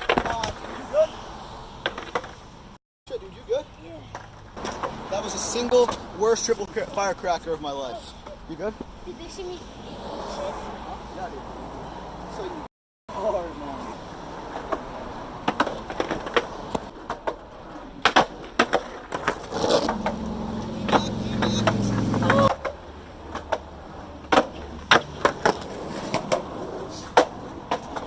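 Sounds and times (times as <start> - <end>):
skateboard clacking on steps: 0.0 - 0.8, 1.8 - 2.4, 14.4 - 20.3, 20.9 - 28.0
low hum: 19.6 - 22.5.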